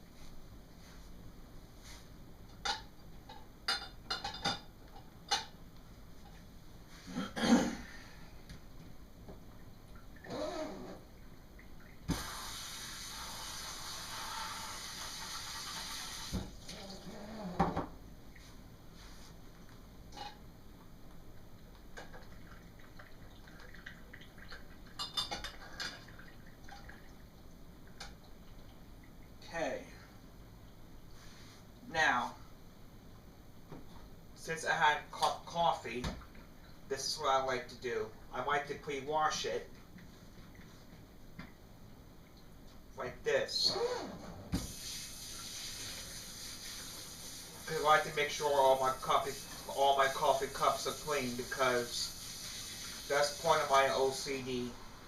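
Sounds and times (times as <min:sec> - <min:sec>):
dishes and cutlery clinking: 0:02.6 - 0:05.6, 0:25.0 - 0:26.1.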